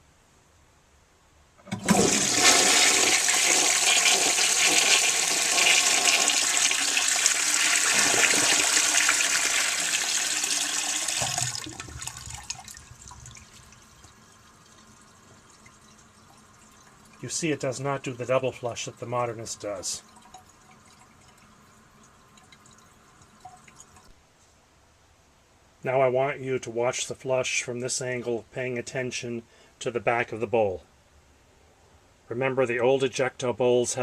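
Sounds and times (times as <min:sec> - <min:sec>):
toilet flushing: 0:01.6 - 0:24.0.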